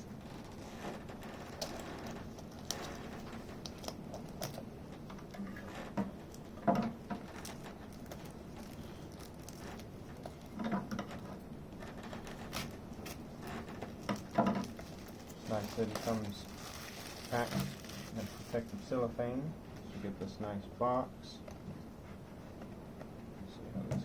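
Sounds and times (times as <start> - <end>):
cellophane packaging crinkling: 0.2 - 5.4, 6.3 - 18.9.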